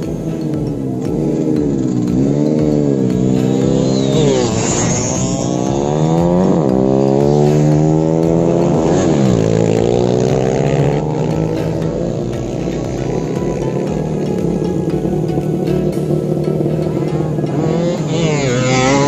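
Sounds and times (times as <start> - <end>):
motorcycle engines revving: 0.0 - 19.0
steady low drone: 0.0 - 19.0.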